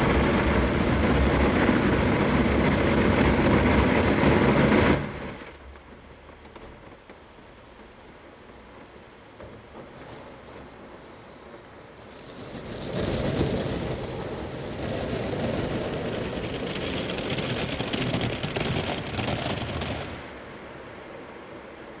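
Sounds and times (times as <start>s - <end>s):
steady car wash noise: 0.0s - 5.5s, 7.4s - 22.0s
water spray pelting car: 12.4s - 20.4s.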